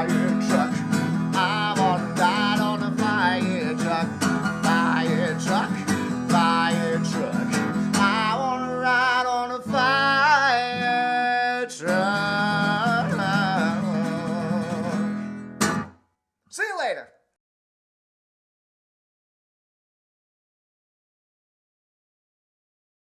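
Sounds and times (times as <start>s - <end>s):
man singing: 0.0s - 15.2s
strummed acoustic guitar: 0.0s - 16.0s.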